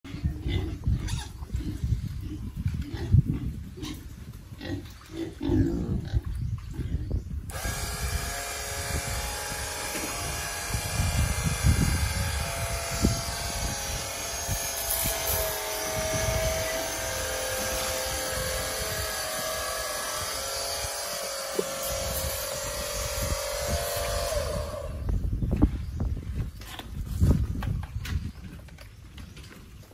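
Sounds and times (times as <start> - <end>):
pigs grunting: 0.1 - 7.0.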